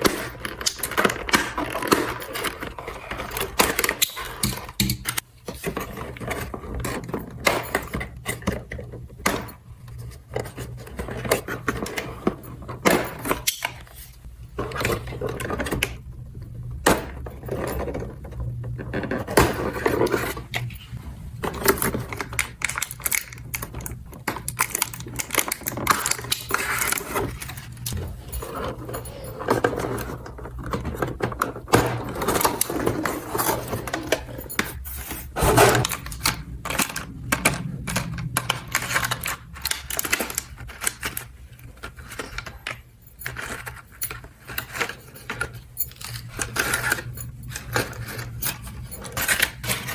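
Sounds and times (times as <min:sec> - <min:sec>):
steady low hum: 0:14.1 - 0:43.3
plastic toy pieces clicking: 0:21.9 - 0:28.0.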